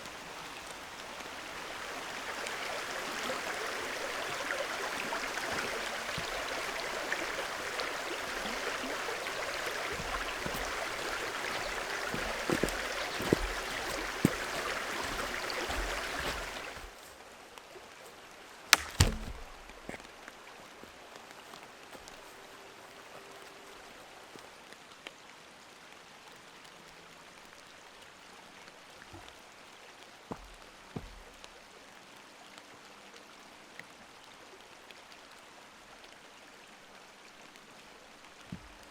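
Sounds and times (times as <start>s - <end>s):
water rushing: 0.0s - 17.1s, 17.8s - 24.6s
quiet wet hiss: 0.0s - 25.1s.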